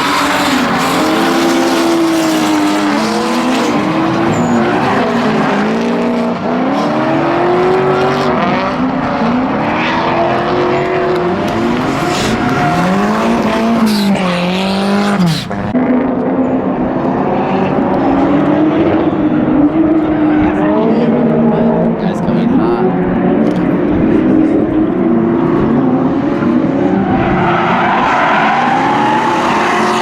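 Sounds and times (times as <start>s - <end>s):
tyres squealing and skidding: 0.0s - 8.0s, 8.8s - 15.6s, 26.2s - 30.0s
car engines revving hard: 0.0s - 30.0s.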